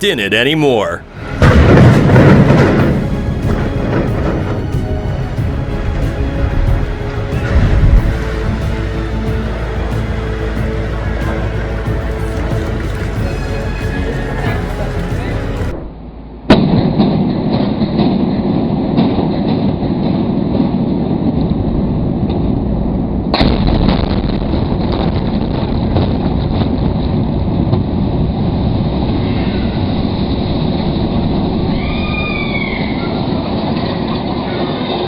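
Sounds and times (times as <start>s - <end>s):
building collapsing rumble: 1.1s - 9.8s
sharp explosive bang: 1.2s - 4.6s.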